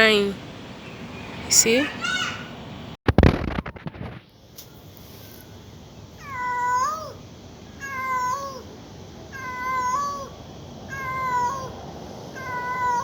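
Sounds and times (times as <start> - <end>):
cat meowing: 6.2 - 7.2, 7.8 - 8.7, 9.3 - 11.8, 12.4 - 13.0.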